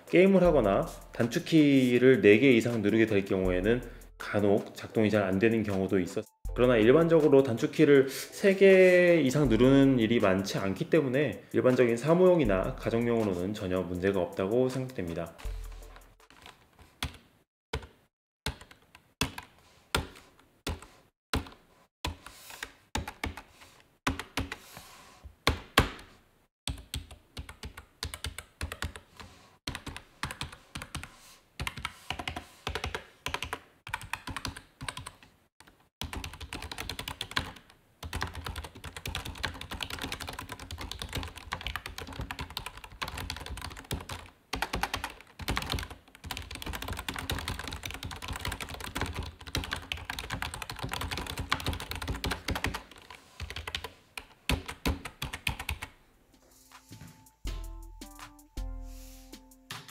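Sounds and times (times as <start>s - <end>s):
typing on keyboard: 22.2s - 23.5s, 26.7s - 29.1s, 29.7s - 55.9s.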